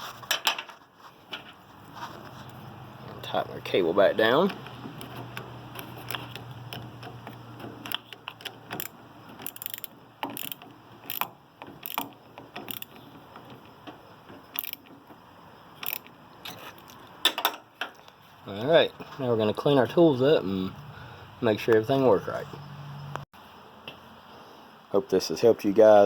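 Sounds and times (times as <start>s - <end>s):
ratchet wrench clicking: 4.5s - 13.7s, 14.5s - 14.9s, 15.8s - 16.2s.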